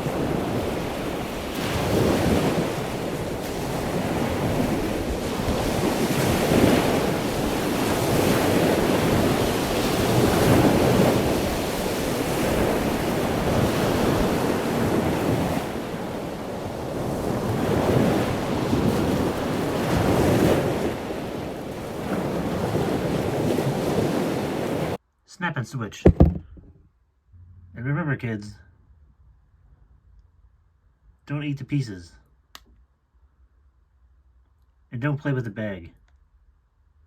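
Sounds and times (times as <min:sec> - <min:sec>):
ocean waves washing: 0:00.0 - 0:25.0.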